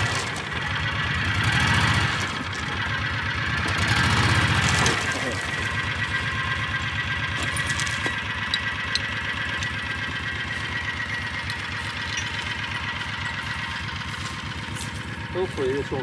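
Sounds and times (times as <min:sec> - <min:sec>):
vehicle engine idling: 0:00.0 - 0:16.0.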